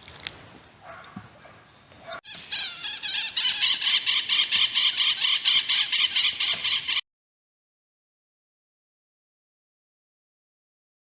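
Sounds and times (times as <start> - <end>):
rapid pulsing animal call: 2.3 - 7.0.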